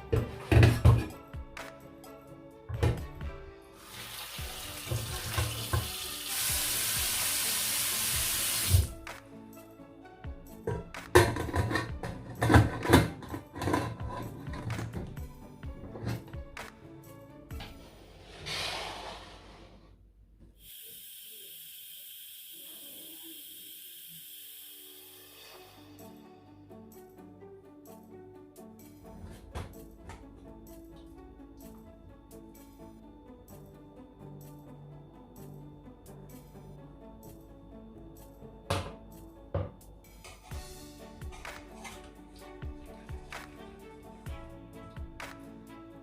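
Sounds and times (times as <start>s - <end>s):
steam hissing from cookware: 3.8s - 9.0s, 18.2s - 19.6s, 20.6s - 26.2s
tap running into a sink: 3.9s - 8.9s.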